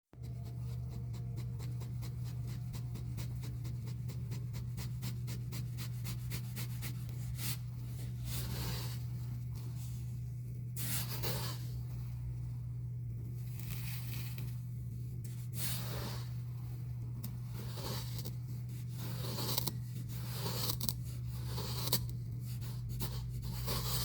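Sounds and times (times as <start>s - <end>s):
steady low hum: 0.2s - 24.0s.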